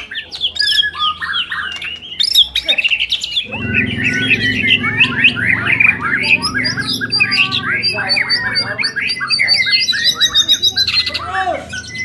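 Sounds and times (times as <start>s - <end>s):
low steady drone: 3.5s - 12.0s.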